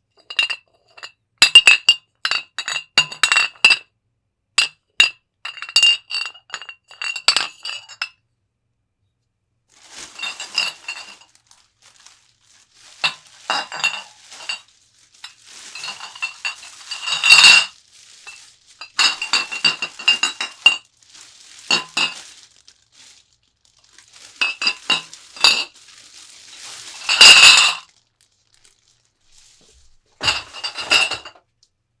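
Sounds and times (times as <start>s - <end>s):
glass bottles clinking: 5.5s - 8.1s, 9.9s - 22.5s, 24.1s - 25.8s, 26.5s - 27.9s, 30.2s - 31.4s.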